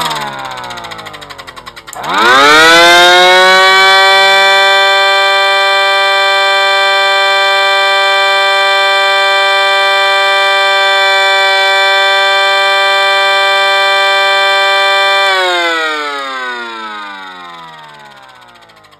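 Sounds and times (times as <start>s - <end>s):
air raid siren wailing: 1.9s - 18.7s.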